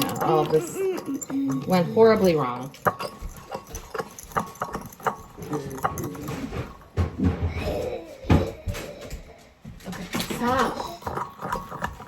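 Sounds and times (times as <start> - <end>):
utensils knocking on cookware: 0.0 - 8.6.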